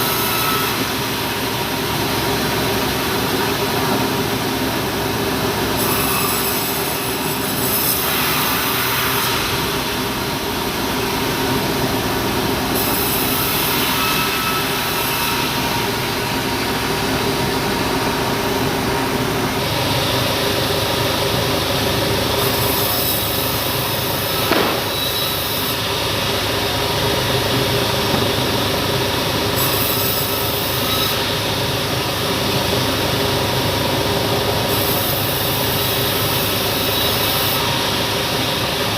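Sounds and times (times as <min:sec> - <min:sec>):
bandsaw machine running: 0:00.0 - 0:38.9
short knock: 0:24.4 - 0:25.1.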